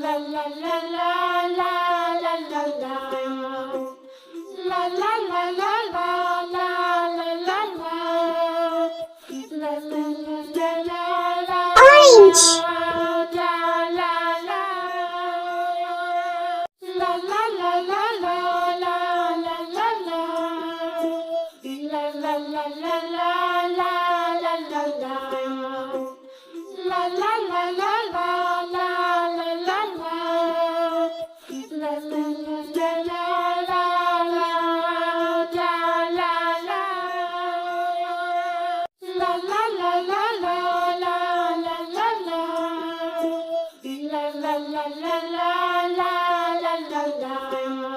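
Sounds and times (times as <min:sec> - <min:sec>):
child-like voice singing: 0:11.8 - 0:12.7.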